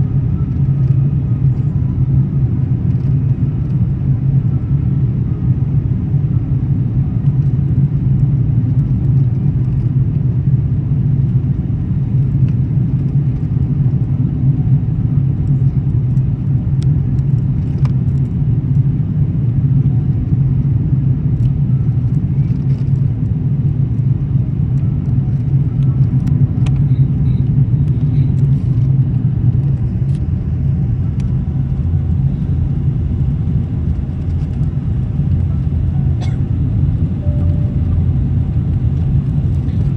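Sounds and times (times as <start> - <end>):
airliner low rumble: 0.0 - 39.9.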